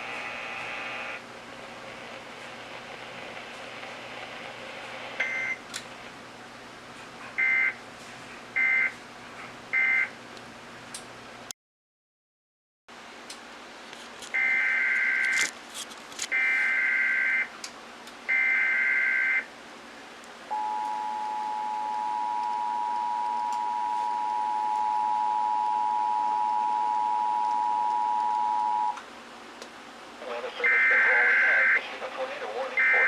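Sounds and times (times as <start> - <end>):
two-tone attention signal: 20.5 - 29.0.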